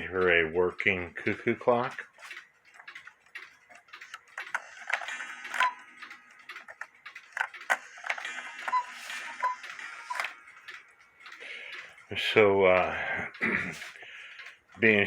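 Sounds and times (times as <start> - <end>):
cuckoo clock ticking: 0.0 - 15.0
sharp clock clicks: 0.0 - 15.0.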